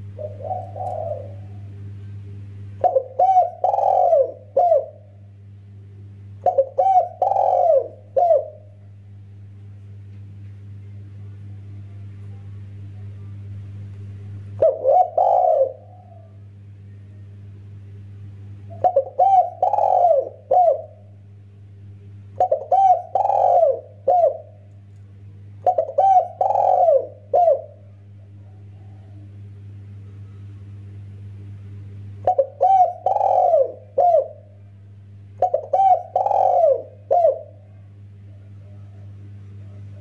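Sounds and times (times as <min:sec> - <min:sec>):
dove cooing: 0:00.0 - 0:01.8, 0:02.8 - 0:05.2, 0:06.4 - 0:08.9, 0:14.6 - 0:16.4, 0:18.7 - 0:21.2, 0:22.4 - 0:24.7, 0:25.6 - 0:29.4, 0:32.2 - 0:34.6, 0:35.4 - 0:40.0
steady low hum: 0:00.0 - 0:40.0.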